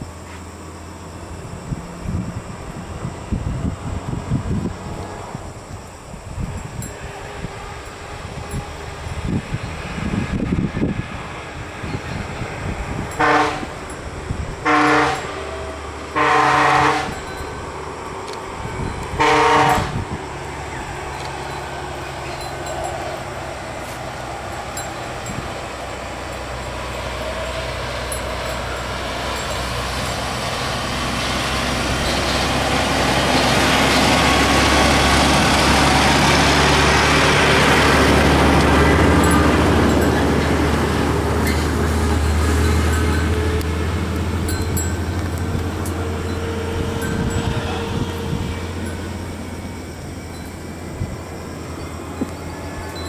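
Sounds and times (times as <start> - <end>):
heavy vehicle passing: 0.0 - 53.0
horn blast: 13.2 - 13.8, 14.6 - 17.3, 19.1 - 20.2, 45.7 - 49.2.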